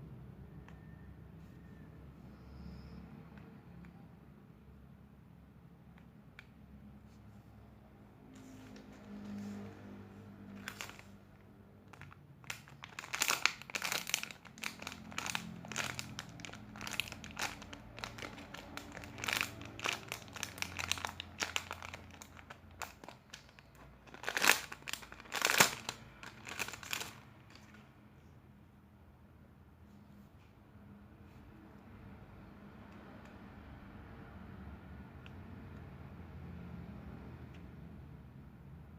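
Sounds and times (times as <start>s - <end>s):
plastic wrapping crinkling: 10.6s - 11.1s, 11.9s - 27.8s.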